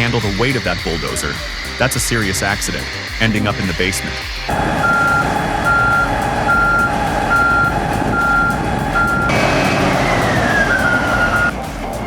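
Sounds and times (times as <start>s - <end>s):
reversing alarm beeping: 4.5s - 11.5s
machine engine noise: 4.5s - 12.0s.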